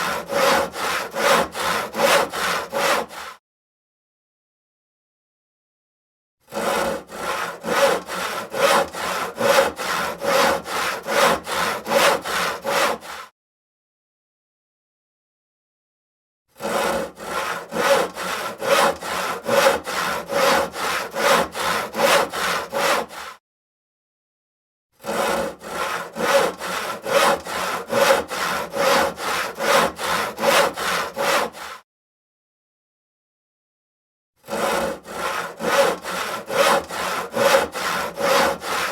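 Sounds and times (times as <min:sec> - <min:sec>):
handsaw cutting wood: 0:00.0 - 0:03.4, 0:06.4 - 0:13.3, 0:16.5 - 0:23.4, 0:25.0 - 0:31.8, 0:34.4 - 0:38.9.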